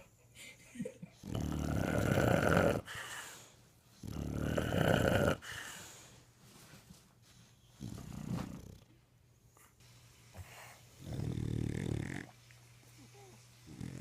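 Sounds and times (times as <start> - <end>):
dog snoring: 1.2 - 2.9, 4.0 - 5.4, 7.8 - 9.0, 11.0 - 12.4, 13.1 - 14.0.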